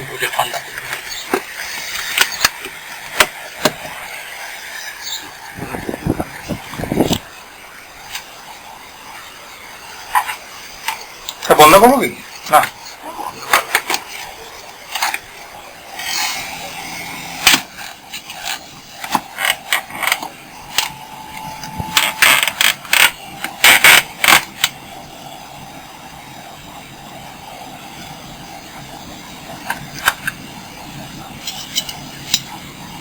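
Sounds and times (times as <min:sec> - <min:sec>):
steady low hum: 0:00.0 - 0:33.0
parts clicking and rattling: 0:21.9 - 0:24.8.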